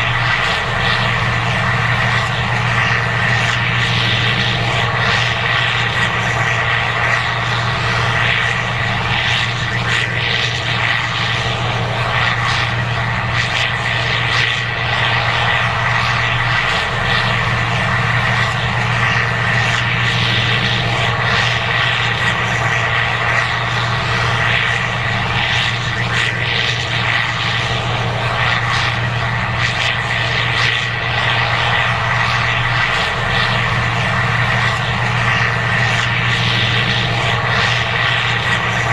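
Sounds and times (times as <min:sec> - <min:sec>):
combine engine drone: 0:00.0 - 0:38.9
steady high whine: 0:00.0 - 0:38.9.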